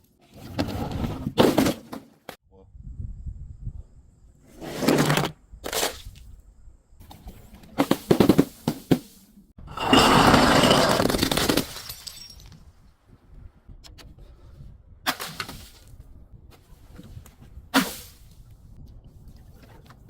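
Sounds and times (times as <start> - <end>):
glass bottles breaking: 9.9 - 12.7.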